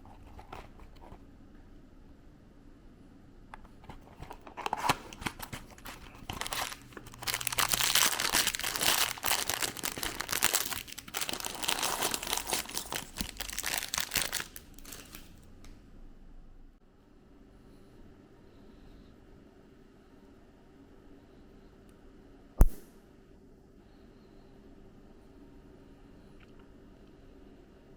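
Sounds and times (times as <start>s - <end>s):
packaging crinkling and tearing: 4.2s - 15.4s.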